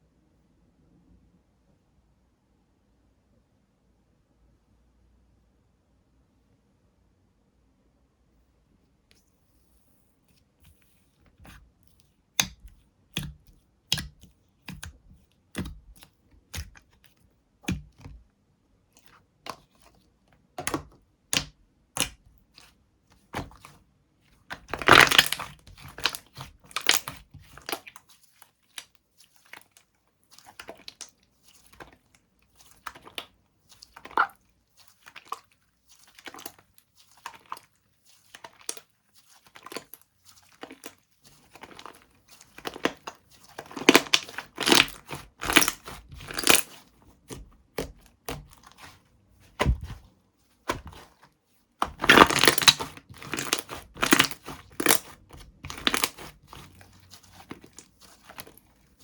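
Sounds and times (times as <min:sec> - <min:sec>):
slime popping and crackling: 0:24.5 - 0:51.2, 0:51.8 - 0:58.9.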